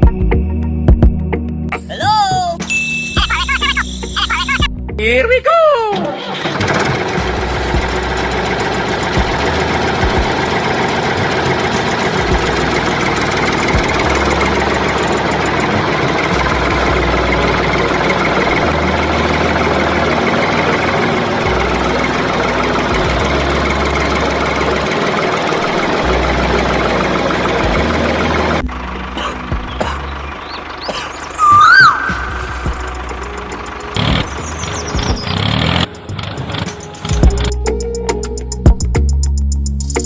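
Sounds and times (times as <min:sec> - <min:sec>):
engine running: 0:01.7 - 0:04.9, 0:05.9 - 0:40.0
deep low rumble: 0:27.5 - 0:35.3.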